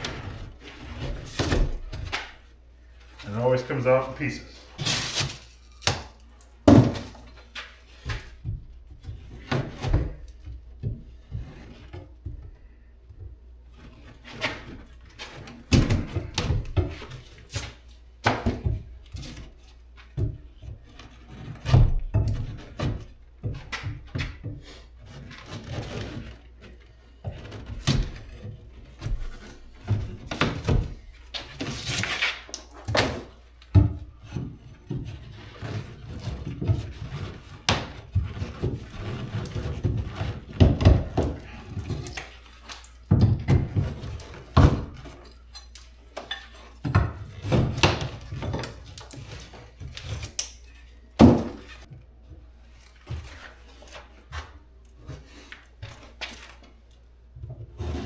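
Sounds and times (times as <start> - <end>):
drywall scraping tear: 0.0 - 2.4, 4.6 - 12.0, 20.6 - 45.3
drywall breaking off wall: 4.8 - 7.3, 14.3 - 19.6, 27.2 - 45.2, 46.5 - 50.6, 51.2 - 51.9.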